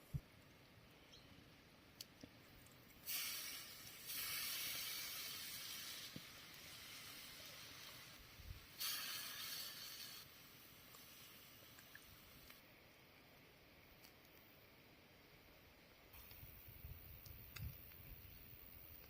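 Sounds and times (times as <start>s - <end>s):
embers hissing under water: 3.0s - 12.6s.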